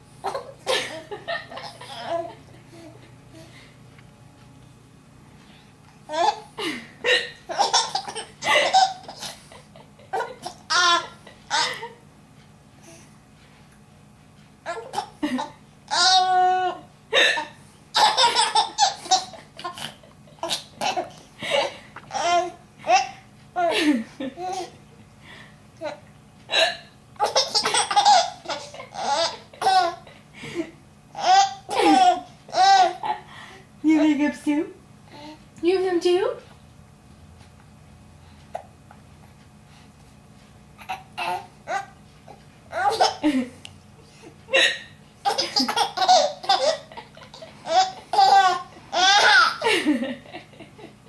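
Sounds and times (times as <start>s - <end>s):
baby giggling: 0.2s - 3.5s, 6.1s - 11.9s, 14.7s - 24.8s, 27.2s - 30.1s, 31.2s - 33.2s, 42.7s - 43.4s, 44.5s - 49.9s.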